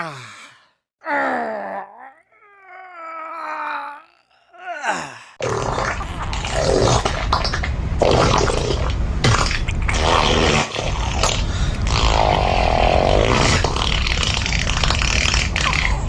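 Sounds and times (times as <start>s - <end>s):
farting sound effect: 5.4s - 16.0s.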